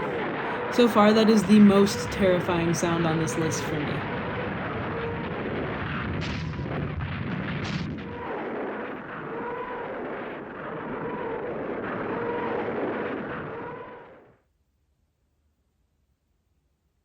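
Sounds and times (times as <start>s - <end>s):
rockets rushing: 0.0s - 14.2s
wavering whine: 0.0s - 14.3s
sharp cracks: 3.8s - 14.3s.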